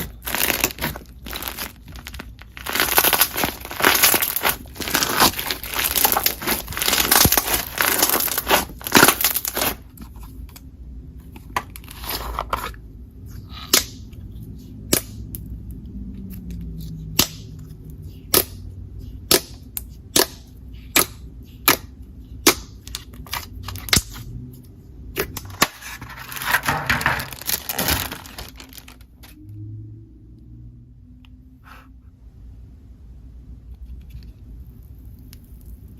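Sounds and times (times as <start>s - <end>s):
slime popping: 0.0s - 9.8s
slime crackling: 0.0s - 9.9s, 25.4s - 29.4s.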